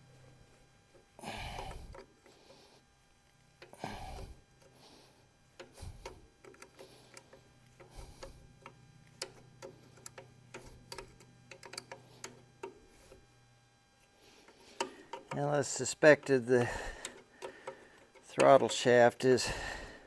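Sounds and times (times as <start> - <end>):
faint low hum: 0.0 - 20.0
hand tools clicking and tapping: 5.6 - 12.8, 14.5 - 18.8.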